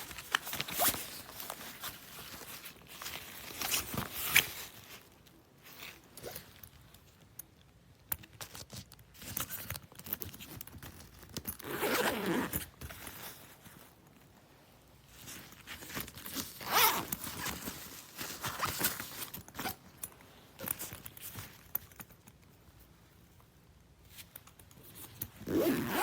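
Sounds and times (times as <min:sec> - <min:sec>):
zippers pulled: 0:05.8 - 0:06.6, 0:11.5 - 0:13.2, 0:16.4 - 0:17.7, 0:25.3 - 0:26.0
fabric rubbing: 0:16.5 - 0:19.8, 0:25.4 - 0:26.0.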